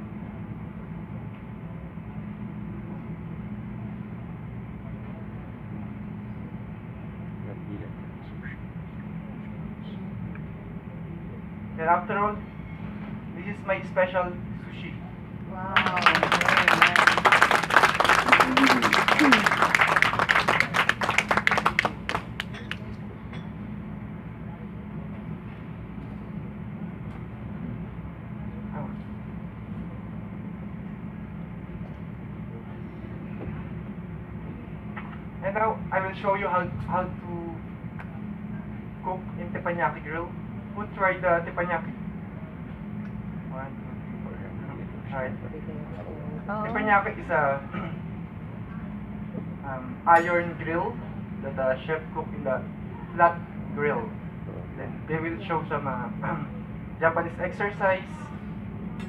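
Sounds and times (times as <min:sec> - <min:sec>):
low mechanical machinery hum: 0:00.0 - 0:59.0
audience applause: 0:15.7 - 0:22.9.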